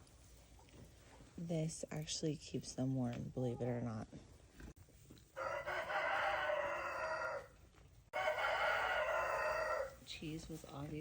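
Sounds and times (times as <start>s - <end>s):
rooster crowing: 5.4s - 7.6s, 8.2s - 10.0s.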